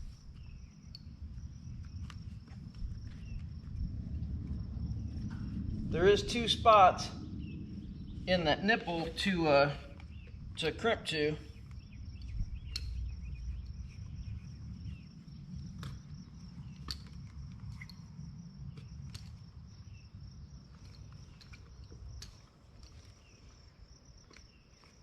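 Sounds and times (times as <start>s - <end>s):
crickets chirring: 0.0s - 25.0s
low rumble: 1.1s - 10.6s.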